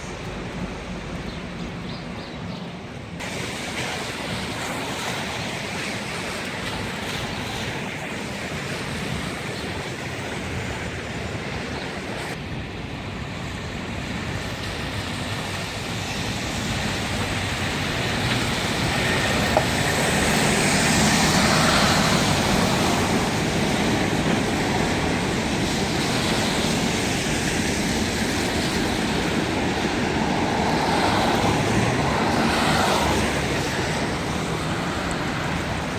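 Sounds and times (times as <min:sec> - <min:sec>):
passing cars: 0:13.4 - 0:35.9.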